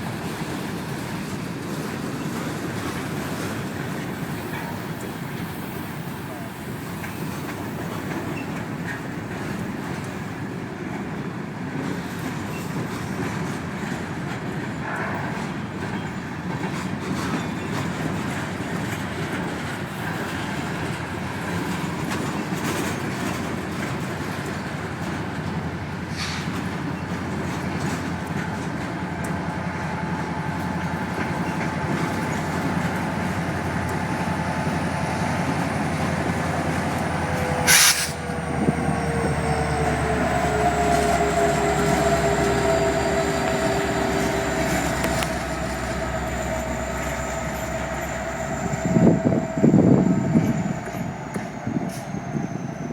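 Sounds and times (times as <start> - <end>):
train wheels rumbling on rails: 0.0 - 52.9
high wheel tones: 27.6 - 52.8
sharp loud click: 37.7 - 38.2.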